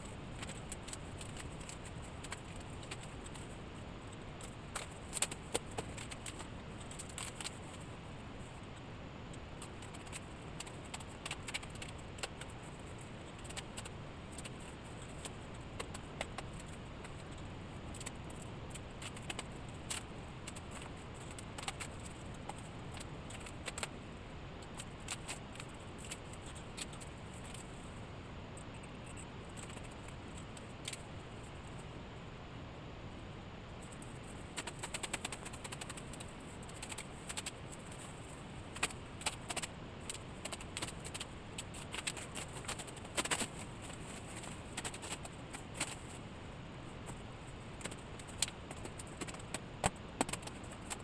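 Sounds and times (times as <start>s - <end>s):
steady background hiss: 0.0s - 51.0s.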